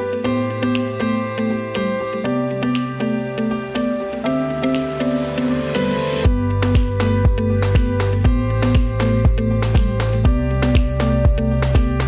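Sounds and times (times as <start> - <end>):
soft new-age instrumental music: 0.0 - 12.0.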